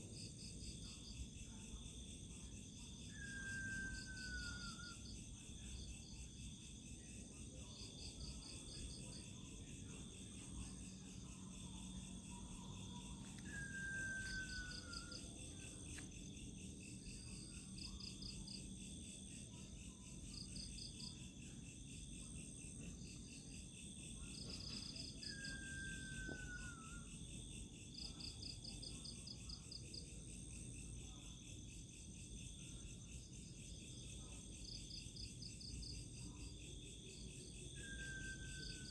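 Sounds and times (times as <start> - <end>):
crickets trilling: 0.0 - 38.9.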